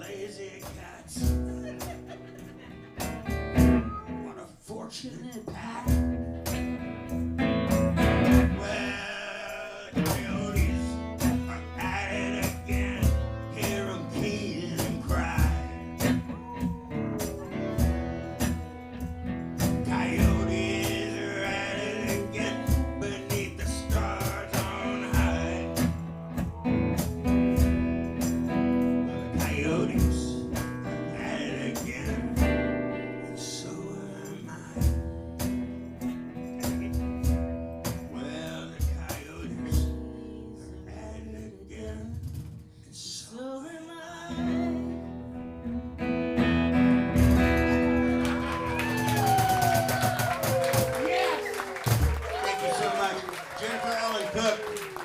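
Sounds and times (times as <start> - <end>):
acoustic guitar playing: 0.0 - 4.5, 5.4 - 42.8, 44.2 - 55.0
person singing: 8.5 - 18.4, 19.6 - 27.8, 31.1 - 32.6, 43.3 - 45.2.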